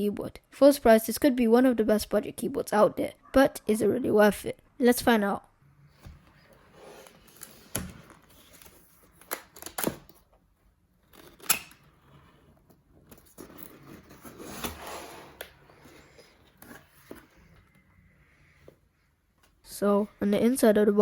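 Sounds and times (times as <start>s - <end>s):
rustling and sliding: 5.8s - 9.3s, 11.9s - 20.0s.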